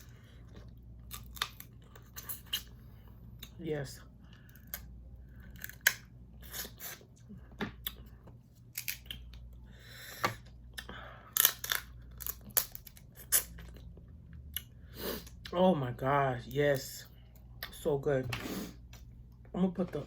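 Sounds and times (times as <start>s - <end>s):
shells cracking and snapping: 1.0s - 2.7s, 4.4s - 6.1s, 8.7s - 9.5s, 11.3s - 13.0s.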